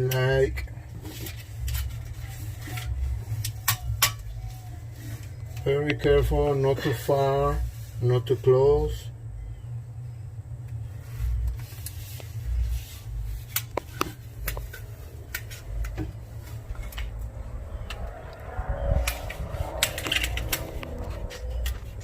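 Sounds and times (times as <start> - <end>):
tape clicks and crackles: 0.0 - 6.0, 10.6 - 22.0
steady low hum: 0.0 - 22.0.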